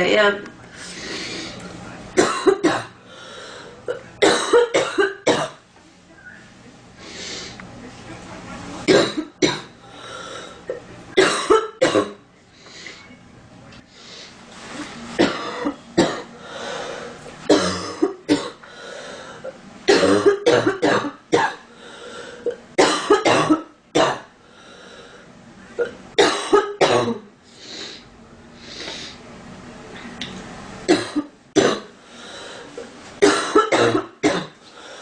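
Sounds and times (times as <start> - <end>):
girl coughing: 2.2 - 3.0, 4.2 - 5.6, 8.9 - 9.7, 11.2 - 12.2, 15.2 - 16.3, 17.5 - 18.6, 19.9 - 21.6, 22.5 - 24.3, 25.8 - 27.2, 30.9 - 31.9, 33.2 - 34.6.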